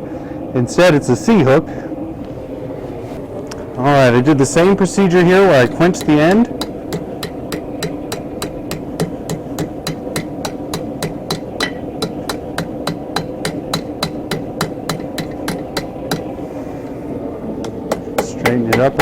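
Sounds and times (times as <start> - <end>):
steady low hum: 0.0 - 19.0
hammer striking steel on anvil: 5.7 - 16.3, 17.9 - 19.0.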